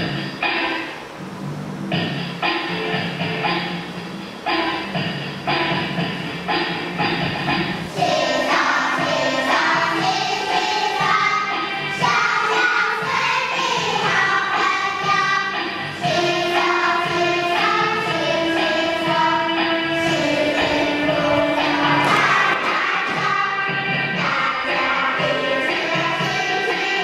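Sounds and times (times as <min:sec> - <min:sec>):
backing track music: 0:00.0 - 0:27.0
children's choir singing: 0:06.6 - 0:27.0.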